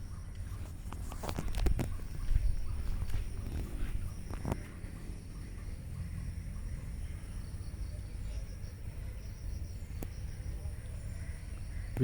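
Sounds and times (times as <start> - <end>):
chirps: 0.0 - 12.0
insects droning: 0.0 - 12.0.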